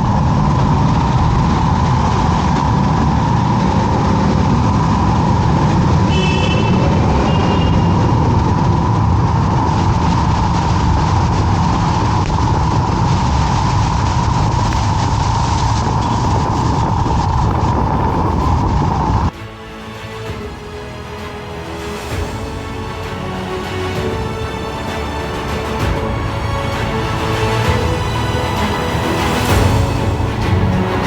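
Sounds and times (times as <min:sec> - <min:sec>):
wind rushing over motorcycle: 0:00.0 - 0:19.3
brief high tone: 0:06.1 - 0:08.1.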